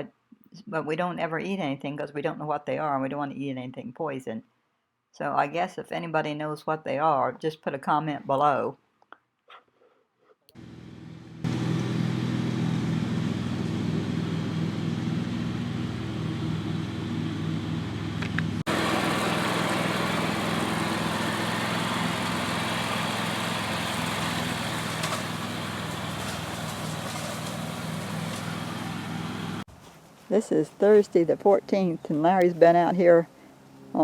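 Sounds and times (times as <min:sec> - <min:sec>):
small engine running: 0:10.6 - 0:29.7.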